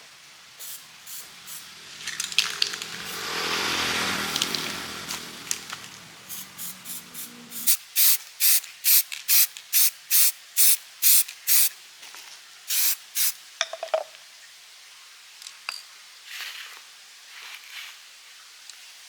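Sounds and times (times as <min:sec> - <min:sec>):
spray nozzle hissing in bursts: 0:00.6 - 0:03.6, 0:06.2 - 0:11.8, 0:12.7 - 0:13.4.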